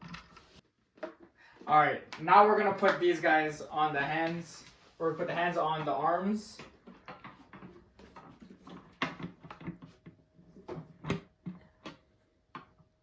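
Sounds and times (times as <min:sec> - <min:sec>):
plastic parts clicking and knocking: 0:06.6 - 0:12.8.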